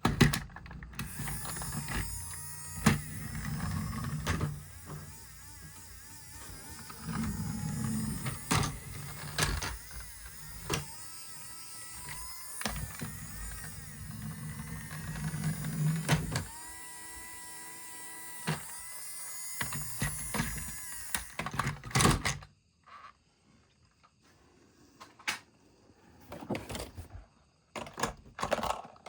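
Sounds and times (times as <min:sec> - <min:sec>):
plastic clicks and knocks: 0:00.0 - 0:03.1
toy electric motor whirring: 0:00.3 - 0:23.1.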